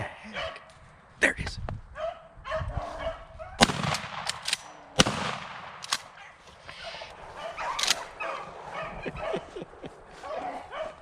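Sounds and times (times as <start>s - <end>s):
shotgun shots: 3.6s - 6.2s.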